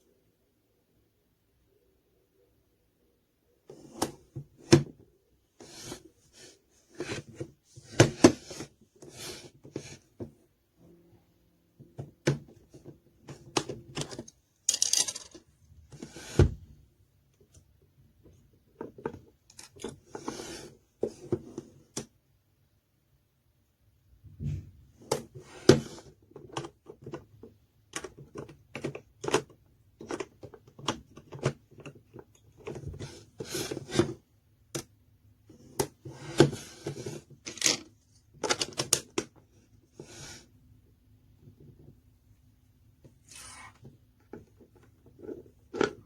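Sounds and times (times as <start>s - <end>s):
objects clicking and knocking: 13.6s - 15.5s.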